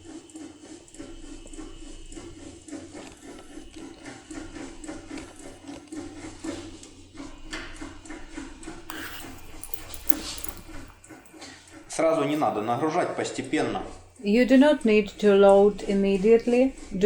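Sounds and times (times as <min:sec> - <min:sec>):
metal key scraping in lock: 0:08.9 - 0:11.4.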